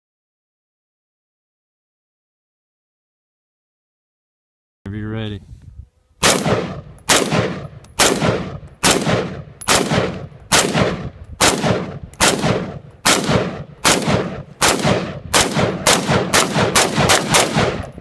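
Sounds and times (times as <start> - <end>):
rifle gunshots echoing: 6.2 - 18.0.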